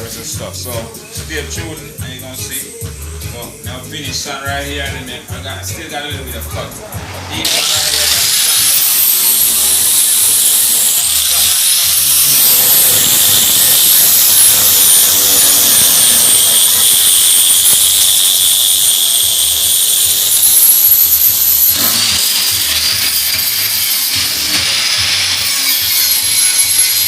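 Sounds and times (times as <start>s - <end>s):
electric sander on wood: 7.0s - 27.0s.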